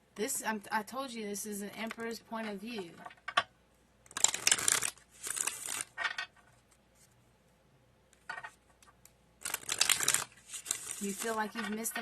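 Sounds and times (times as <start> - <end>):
cards being shuffled: 4.1 - 5.9, 9.4 - 11.8.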